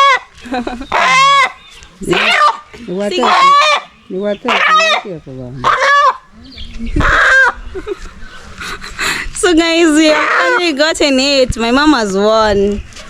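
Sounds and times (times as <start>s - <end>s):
chicken squawking in distress: 0.0s - 0.3s, 0.9s - 6.2s, 7.0s - 7.6s, 10.0s - 10.6s.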